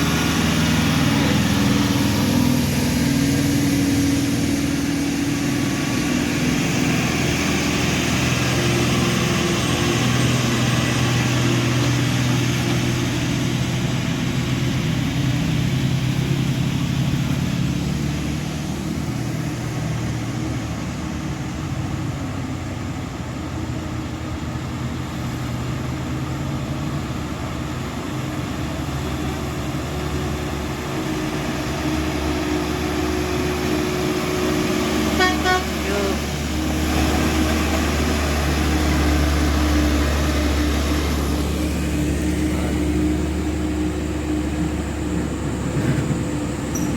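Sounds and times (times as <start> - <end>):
truck diesel engine under load: 0.0 - 46.9.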